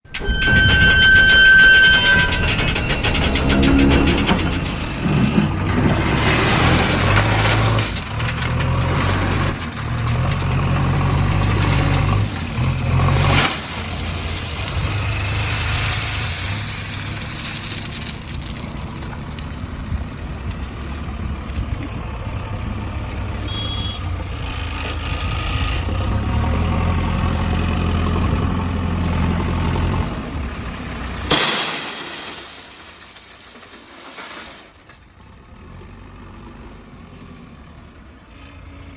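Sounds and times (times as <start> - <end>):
diesel machinery engine revving: 2.5 - 17.2, 18.4 - 31.3.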